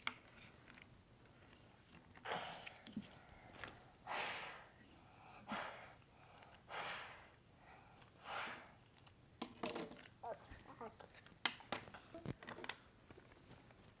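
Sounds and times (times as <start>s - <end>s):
person breathing: 2.2s - 8.8s.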